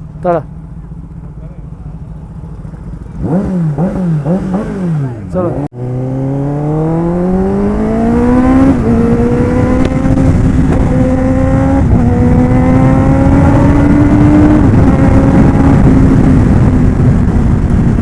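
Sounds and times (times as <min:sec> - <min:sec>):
motorcycle engine accelerating hard: 0:00.6 - 0:18.0
wind rushing: 0:05.8 - 0:18.0.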